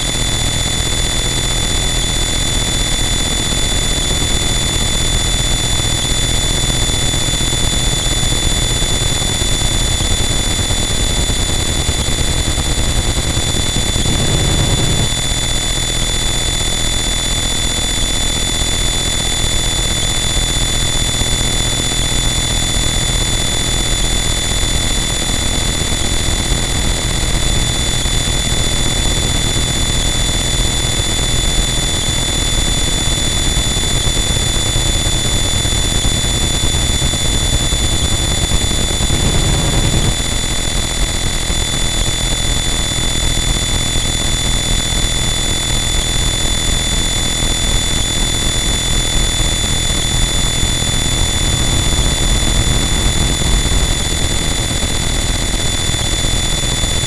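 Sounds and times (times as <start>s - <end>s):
distorted static noise wall: 11.9s - 15.2s, 35.2s - 41.1s.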